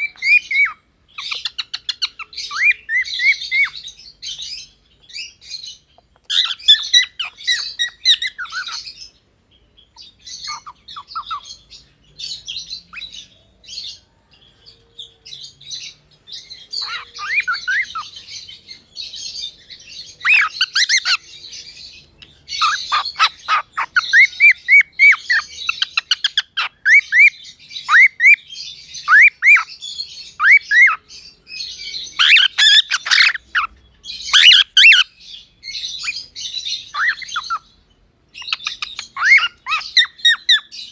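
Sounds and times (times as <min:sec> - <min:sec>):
cockatiel chirping and squawking: 0:00.0 - 0:09.1, 0:10.0 - 0:13.3, 0:16.6 - 0:37.7, 0:38.3 - 0:40.9
cockatiel whistling: 0:32.2 - 0:33.7, 0:38.4 - 0:40.6.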